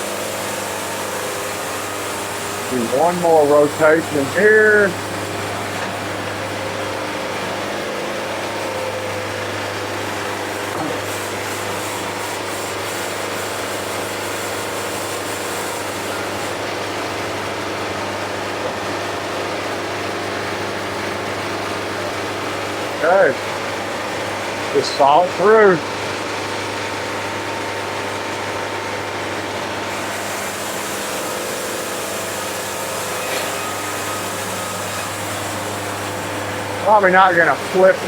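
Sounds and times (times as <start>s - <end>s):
band saw cutting log: 0.0s - 38.0s.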